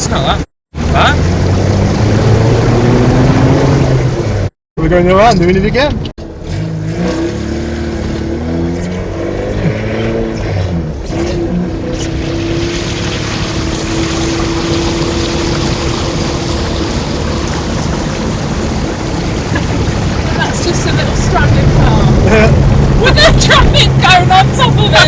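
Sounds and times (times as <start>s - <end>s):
water rushing against car: 0.0s - 5.9s, 11.6s - 25.0s
car engine running: 0.0s - 9.8s, 10.6s - 25.0s.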